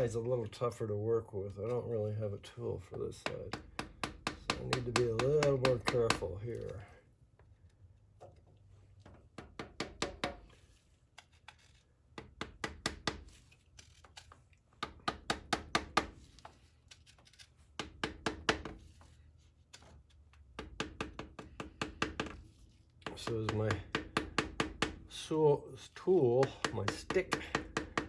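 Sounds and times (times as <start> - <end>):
stick knocking on seal: 3.3 - 6.3, 26.4 - 28.0.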